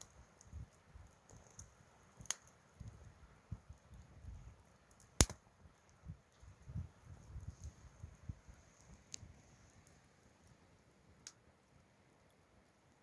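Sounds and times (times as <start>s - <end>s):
sharp snap: 5.2s - 5.4s.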